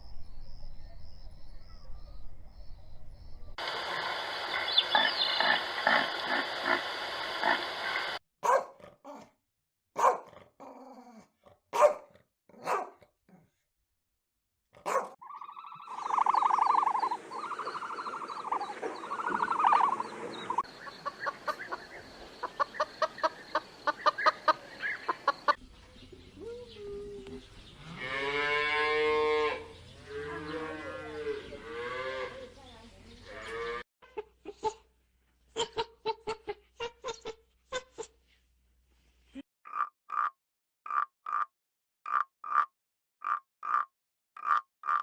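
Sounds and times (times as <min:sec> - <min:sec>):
dogs yipping: 0:08.4 - 0:08.7, 0:10.0 - 0:10.2, 0:11.8 - 0:12.0, 0:12.6 - 0:13.0, 0:14.8 - 0:15.2, 0:17.8 - 0:20.6
dogs barking: 0:08.4 - 0:09.2, 0:10.0 - 0:10.4, 0:11.7 - 0:13.0, 0:14.8 - 0:15.2.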